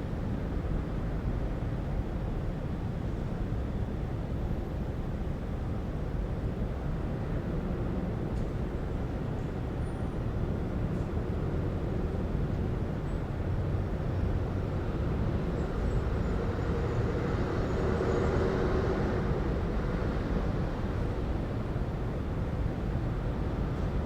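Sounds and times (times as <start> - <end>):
low traffic rumble: 0.0 - 24.0.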